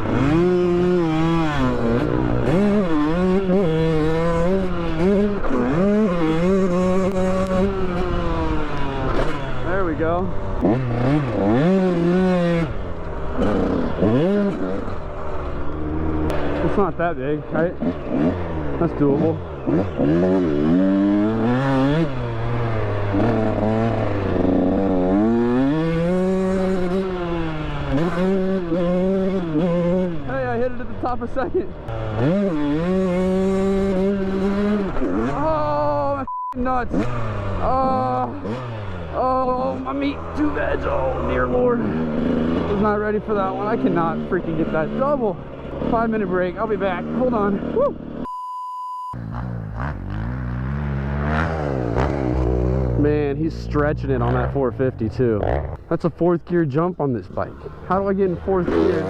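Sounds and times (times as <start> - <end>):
dirt bike engine revving: 0.0 - 48.3, 49.1 - 59.0.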